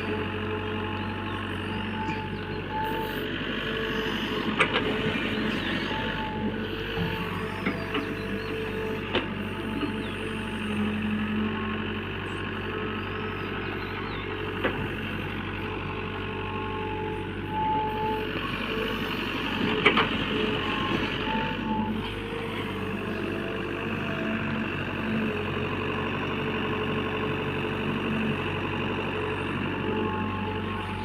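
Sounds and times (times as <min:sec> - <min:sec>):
diesel engine running: 0:00.0 - 0:31.0.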